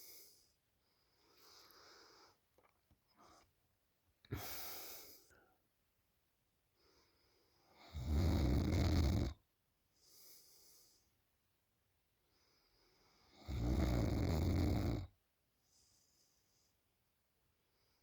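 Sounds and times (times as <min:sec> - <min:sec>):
quiet breaths: 0:00.0 - 0:03.6, 0:04.2 - 0:05.8, 0:06.6 - 0:08.0, 0:09.3 - 0:11.5, 0:12.1 - 0:14.0, 0:14.7 - 0:18.0
woman snoring loudly: 0:07.9 - 0:09.4, 0:13.4 - 0:15.1.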